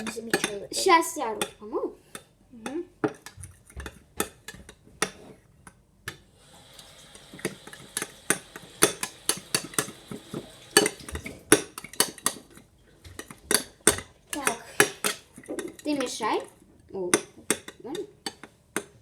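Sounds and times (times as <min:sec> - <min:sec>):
utensil clinking on dish: 0:00.0 - 0:00.6, 0:07.0 - 0:16.3
utensil stirring slime: 0:00.0 - 0:06.3, 0:06.9 - 0:19.0.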